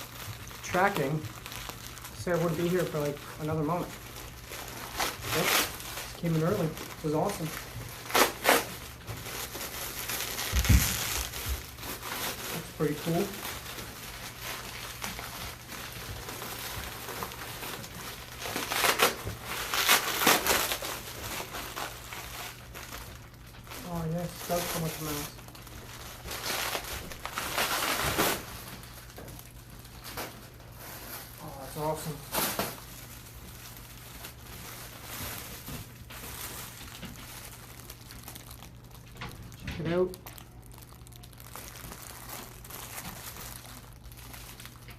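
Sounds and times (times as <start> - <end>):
plastic packaging crinkling: 0.0 - 44.9.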